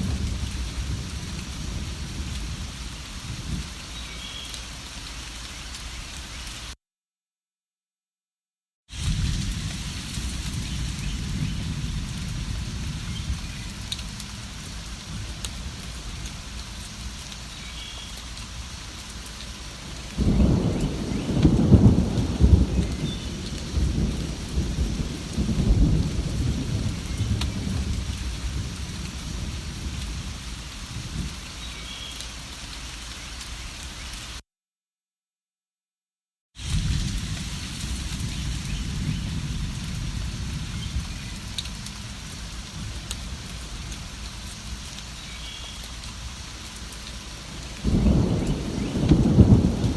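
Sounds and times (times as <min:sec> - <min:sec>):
rolling thunder: 0:00.0 - 0:03.7, 0:09.0 - 0:16.6, 0:20.1 - 0:31.4, 0:36.6 - 0:44.2, 0:47.6 - 0:49.9
steady rain: 0:00.0 - 0:06.8, 0:08.9 - 0:34.4, 0:36.6 - 0:49.9.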